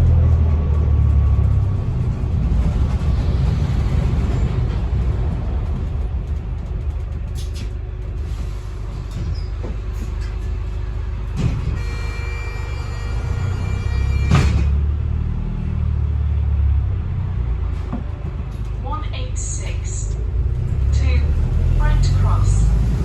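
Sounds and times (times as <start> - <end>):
bus engine drone: 0.0 - 23.0.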